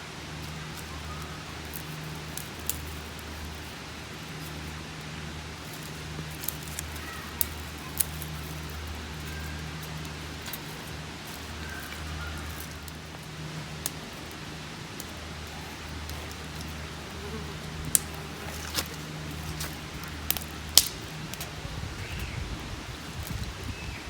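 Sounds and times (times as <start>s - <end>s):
steady low hum: 0.0s - 24.0s
sharp cracks: 17.8s - 21.5s.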